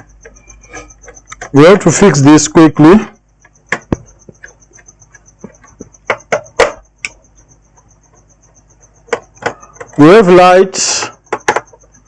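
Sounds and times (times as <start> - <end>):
faint pulsing high-pitched tone: 0.0 - 12.0
laptop handling clicks and knocks: 11.2 - 11.9.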